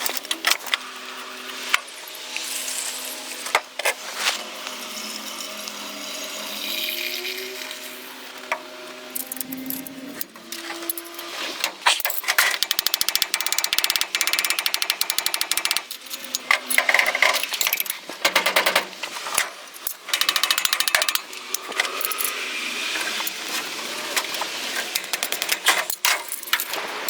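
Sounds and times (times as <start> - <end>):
power tool rattling: 12.0 - 18.9, 19.9 - 22.3.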